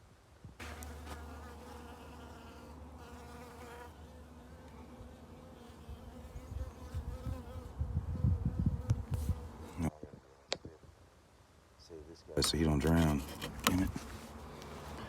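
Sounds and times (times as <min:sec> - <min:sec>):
bee buzzing: 0:00.6 - 0:09.9.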